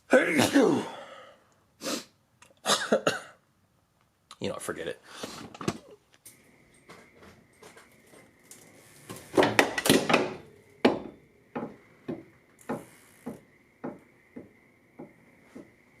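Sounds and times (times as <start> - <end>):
clattering: 6.9 - 14.1
evenly spaced knocks: 9.3 - 16.0.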